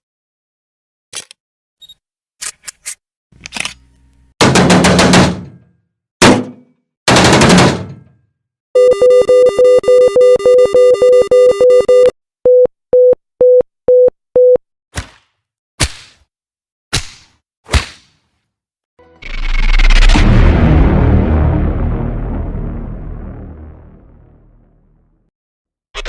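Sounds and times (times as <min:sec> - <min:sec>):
clean beeps: 0:08.8 - 0:14.6.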